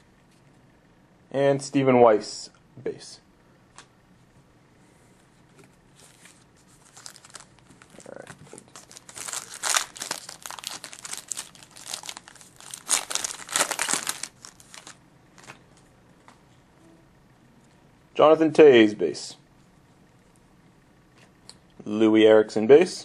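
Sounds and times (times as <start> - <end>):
plastic packaging crinkling: 6.0 - 15.6.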